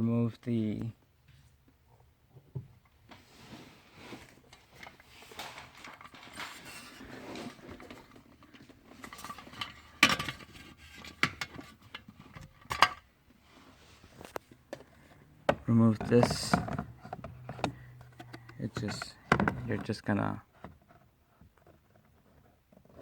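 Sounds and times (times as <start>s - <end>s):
cover rustling and clicking: 4.2s - 13.1s, 14.0s - 23.0s.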